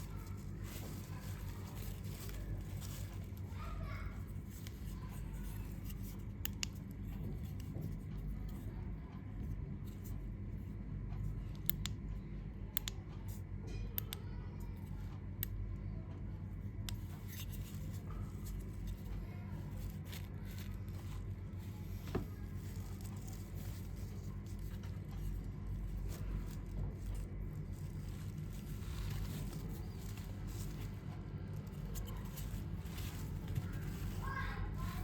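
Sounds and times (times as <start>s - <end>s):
light rustling: 0.0s - 6.2s, 16.9s - 35.0s
steady low hum: 0.0s - 35.0s
small sharp clicks: 11.6s - 12.1s.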